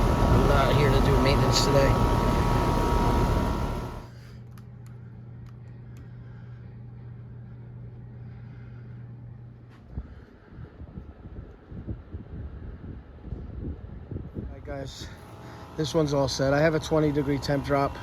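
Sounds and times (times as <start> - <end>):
low hum: 0.0 - 4.1
air conditioner running: 0.0 - 18.0.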